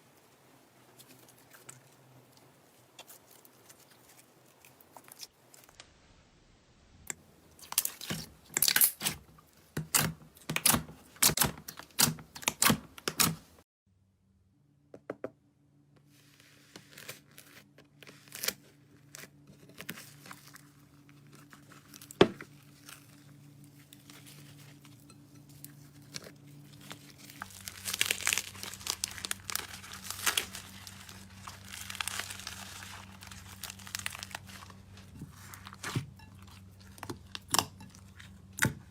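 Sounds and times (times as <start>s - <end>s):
dense crinkly crackling: 0.1s - 5.9s, 17.2s - 37.4s
slime squeezed crackling and popping: 26.8s - 34.8s.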